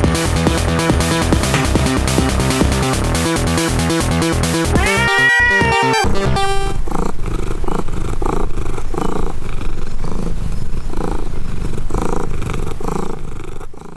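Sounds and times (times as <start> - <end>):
cat purring: 6.5 - 13.9.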